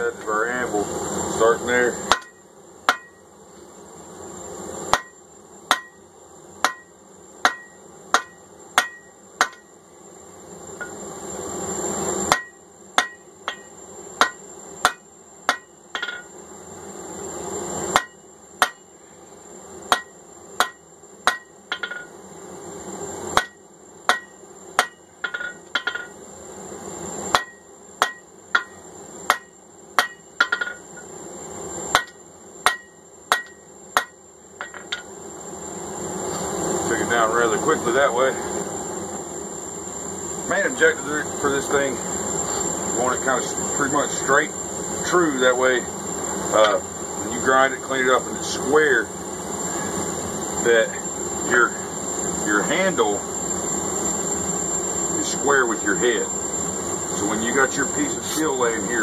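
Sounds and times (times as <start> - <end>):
steady hiss: 0.0 - 59.0
hammer striking steel on anvil: 2.1 - 3.2, 4.9 - 6.0, 6.6 - 9.7, 12.3 - 16.3, 17.9 - 18.8, 19.9 - 22.1, 23.4 - 26.1, 27.3 - 30.8, 31.9 - 35.1.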